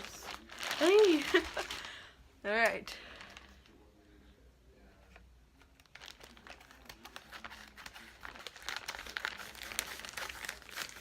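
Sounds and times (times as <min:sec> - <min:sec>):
packaging crinkling: 0:00.0 - 0:02.1, 0:03.0 - 0:03.6, 0:05.6 - 0:11.0.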